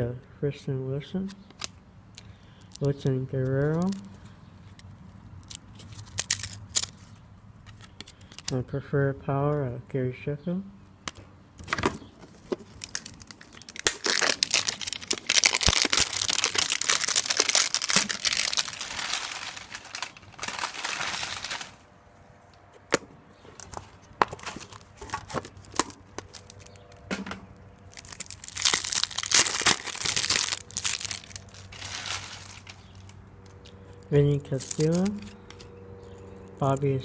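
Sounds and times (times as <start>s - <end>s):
wrapper tearing and crinkling: 5.4s - 7.0s, 12.3s - 21.9s, 24.4s - 27.1s, 27.8s - 33.2s, 34.6s - 35.3s.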